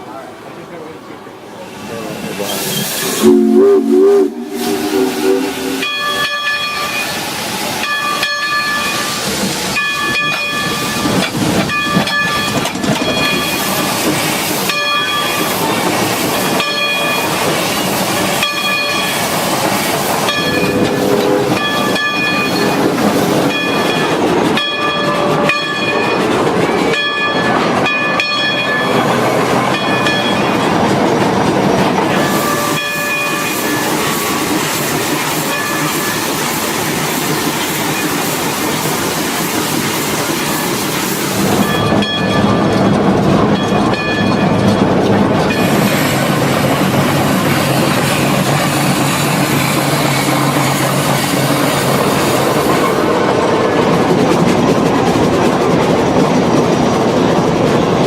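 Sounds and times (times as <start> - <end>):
steam locomotive clanking: 0.7 - 58.0
steam hissing: 1.6 - 11.2, 13.0 - 24.4, 31.8 - 41.9, 45.6 - 53.4
ringing metallic tones: 3.1 - 7.2.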